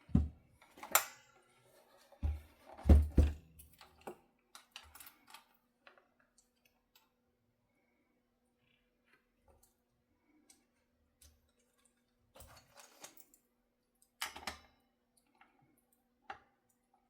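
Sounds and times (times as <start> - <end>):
dull heavy knocks: 2.3 - 3.4.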